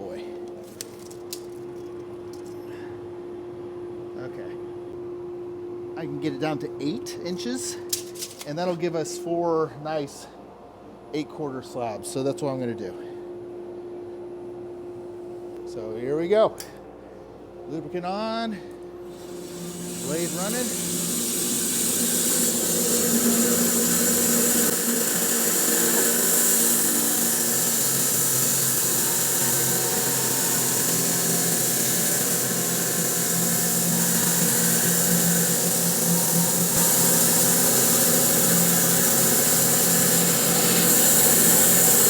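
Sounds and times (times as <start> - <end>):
bandsaw cutting a log: 19.2 - 42.0.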